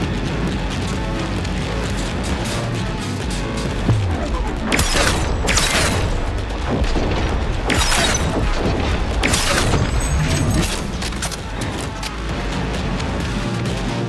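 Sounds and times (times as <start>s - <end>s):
video game background music: 0.0s - 14.0s
heavy booming crashes: 1.1s - 13.4s.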